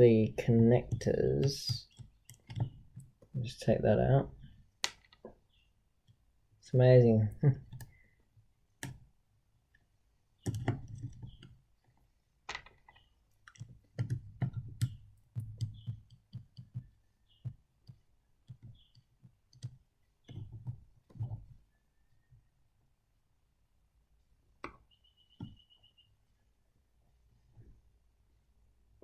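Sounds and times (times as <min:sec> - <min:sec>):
plastic parts clicking and knocking: 0:00.8 - 0:03.5, 0:04.4 - 0:05.4, 0:08.8 - 0:09.1, 0:10.4 - 0:21.6.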